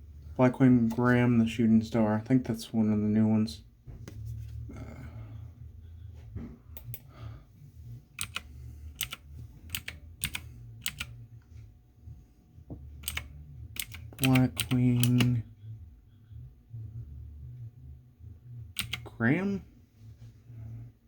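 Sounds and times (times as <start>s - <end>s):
low steady hum: 0.0s - 21.0s
keyboard typing: 8.2s - 11.2s, 13.0s - 15.4s, 18.8s - 19.1s.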